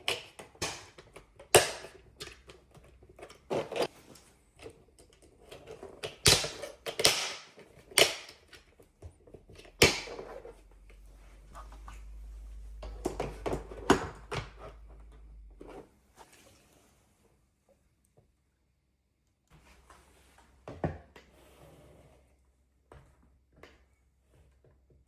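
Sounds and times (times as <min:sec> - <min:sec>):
low steady hum: 0:09.4 - 0:16.7.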